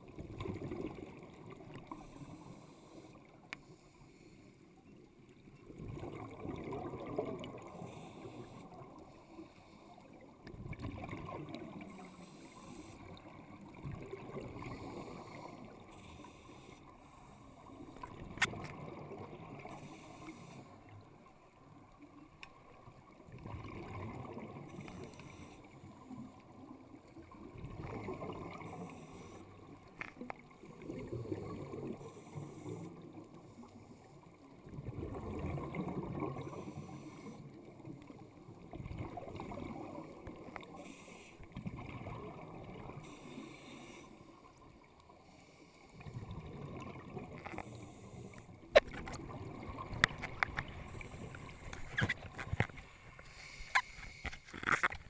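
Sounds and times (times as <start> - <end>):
exhaled bubbles underwater: 0.0 - 2.5, 5.4 - 9.1, 10.0 - 16.3, 17.6 - 45.2, 45.8 - 53.2
hissing regulator inhalations: 40.7 - 41.5, 52.8 - 54.6.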